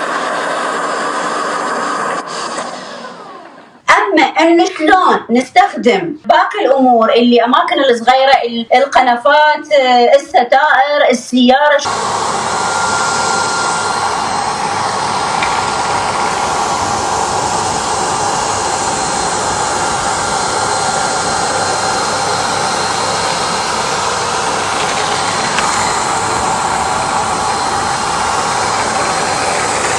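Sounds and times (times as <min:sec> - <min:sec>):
floor-washing vacuum cleaner running: 0:00.0 - 0:03.8, 0:11.8 - 0:29.9.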